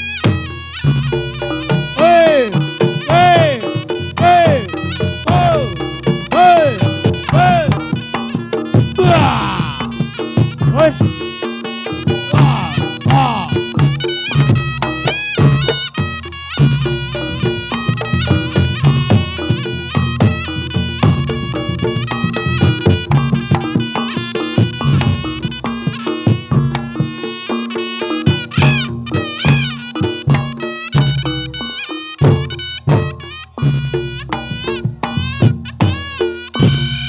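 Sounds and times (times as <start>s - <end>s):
drum strokes: 0.0s - 37.0s
reedy shawm melody: 0.0s - 37.0s.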